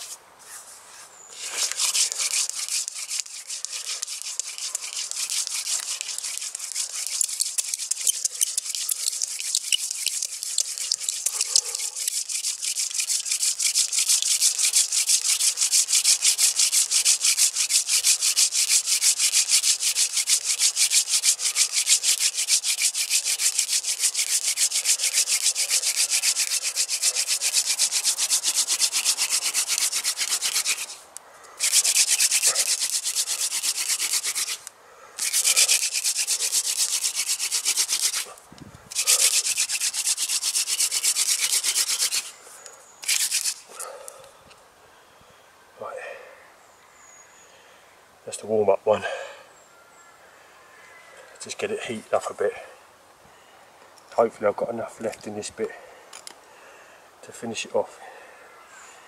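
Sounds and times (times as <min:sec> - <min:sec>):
wooden spindle rubbing in notch: 0:01.4 - 0:31.0, 0:31.6 - 0:43.9.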